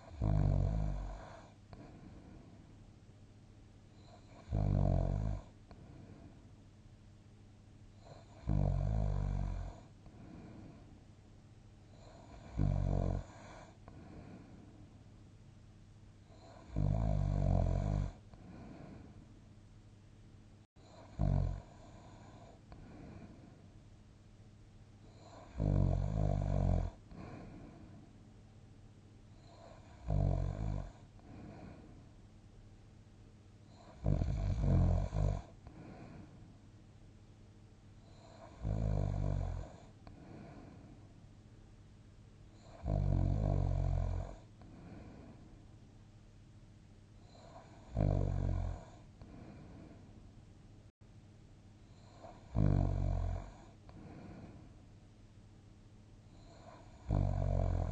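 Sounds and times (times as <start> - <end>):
person snoring: 0.0 - 2.6, 4.0 - 6.4, 8.0 - 10.9, 11.9 - 14.7, 16.3 - 19.2, 20.8 - 23.6, 25.1 - 28.0, 29.4 - 32.0, 33.7 - 36.3, 38.1 - 40.9, 42.6 - 45.4, 47.2 - 50.1, 51.9 - 54.7, 56.4 - 57.9
quiet breathing: 0.0 - 15.3, 16.1 - 19.5, 20.5 - 24.0, 24.9 - 28.4, 29.2 - 32.4, 33.6 - 36.9, 37.8 - 41.4, 42.4 - 45.9, 46.9 - 51.0, 51.8 - 57.9
soft breathing: 1.1 - 3.0, 5.5 - 6.7, 9.8 - 11.1, 13.2 - 15.1, 18.2 - 19.5, 20.7 - 23.9, 26.9 - 28.3, 30.8 - 32.3, 35.4 - 36.7, 39.8 - 41.2, 44.4 - 45.7, 48.8 - 50.3, 53.5 - 54.9.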